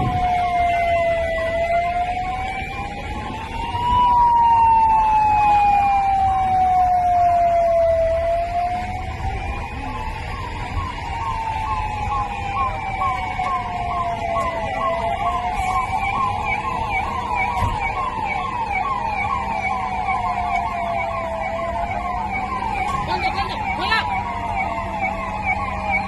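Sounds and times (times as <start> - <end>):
wailing siren: 0.0 - 26.0
yelping siren: 0.0 - 26.0.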